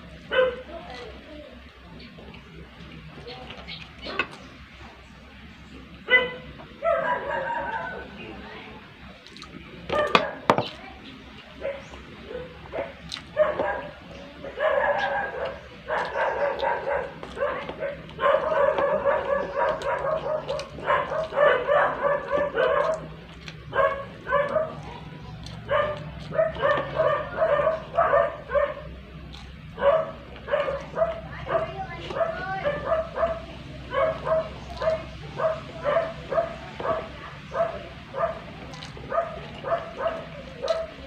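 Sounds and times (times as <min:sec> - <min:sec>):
dog yapping: 0:00.3 - 0:01.0, 0:06.1 - 0:08.2, 0:09.9 - 0:10.7, 0:11.6 - 0:28.9, 0:29.8 - 0:41.0.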